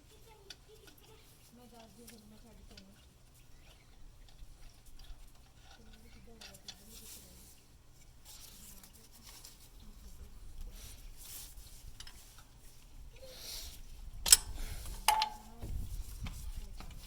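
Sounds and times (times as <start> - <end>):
metal tools clinking: 14.3 - 15.6
sharp metallic clinks: 14.3 - 15.6.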